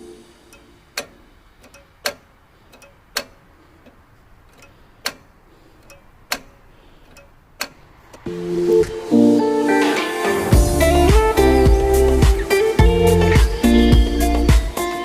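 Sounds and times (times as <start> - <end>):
sharp clicks or taps: 1.0 - 8.3
music: 8.3 - 15.0.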